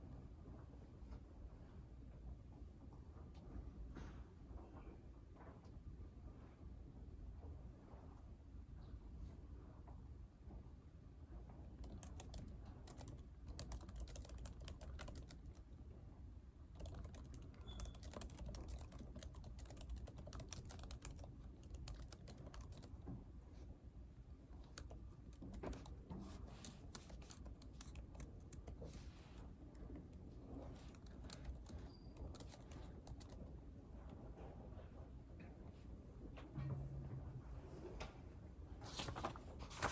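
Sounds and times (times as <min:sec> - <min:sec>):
low room rumble: 0:00.0 - 0:39.9
typing on a keyboard: 0:11.7 - 0:15.7, 0:16.7 - 0:23.1, 0:24.6 - 0:29.0, 0:29.7 - 0:33.5.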